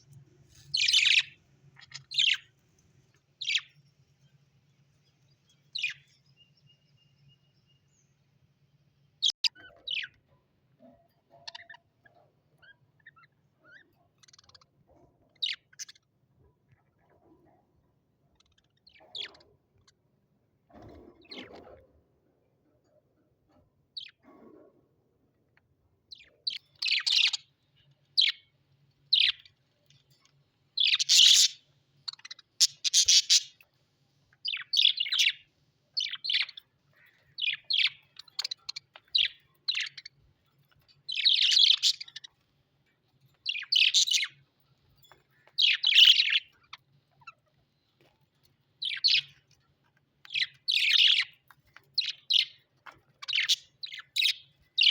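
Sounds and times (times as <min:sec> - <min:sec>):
parrot chirping: 0:00.6 - 0:02.6, 0:11.3 - 0:16.1, 0:26.1 - 0:28.5, 0:29.1 - 0:33.7, 0:34.4 - 0:42.5, 0:43.3 - 0:44.5, 0:45.3 - 0:47.5, 0:48.8 - 0:49.6, 0:50.2 - 0:54.9.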